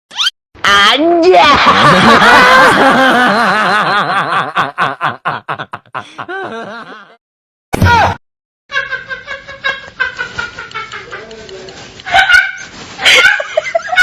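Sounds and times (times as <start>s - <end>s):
comedic laughter effect: 1.4s - 7.2s, 8.7s - 11.4s, 12.1s - 14.0s.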